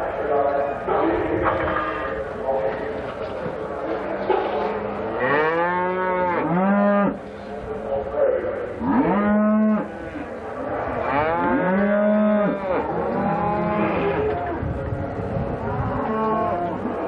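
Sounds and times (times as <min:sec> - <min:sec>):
cattle mooing: 0:05.2 - 0:07.2, 0:08.8 - 0:10.3, 0:10.9 - 0:14.6, 0:15.6 - 0:17.0.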